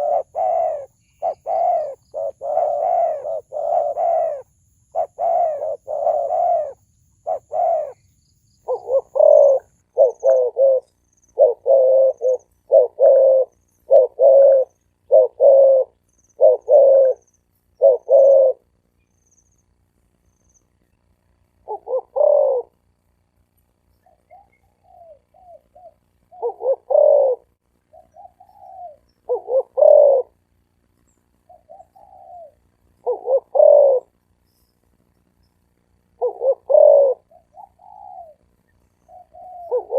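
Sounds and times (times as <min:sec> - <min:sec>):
dove cooing: 0:00.0 - 0:18.7, 0:21.6 - 0:22.8, 0:24.0 - 0:30.4, 0:31.4 - 0:34.2, 0:36.1 - 0:39.9.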